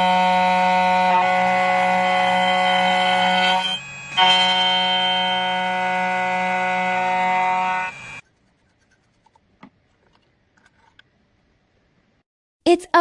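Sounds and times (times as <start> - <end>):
key cutting machine whine: 0.0 - 8.2.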